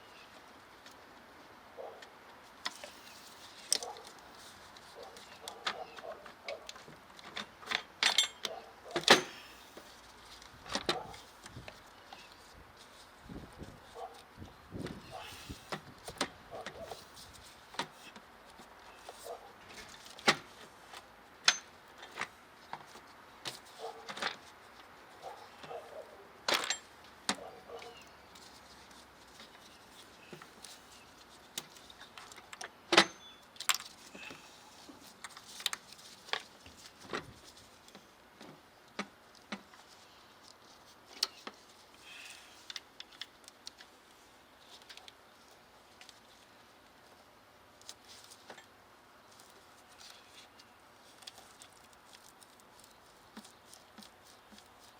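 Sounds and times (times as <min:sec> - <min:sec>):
metal tools clinking: 0:07.7 - 0:09.5, 0:26.5 - 0:27.0, 0:33.0 - 0:34.3.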